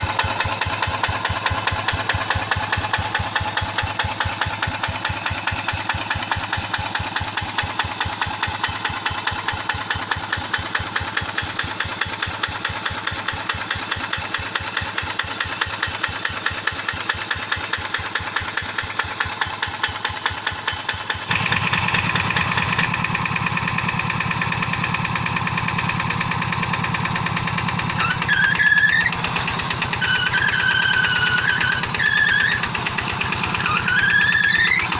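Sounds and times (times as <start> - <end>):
diesel engine chugging: 0.0 - 34.9
brief rising squeal: 30.2 - 32.7, 33.6 - 34.9.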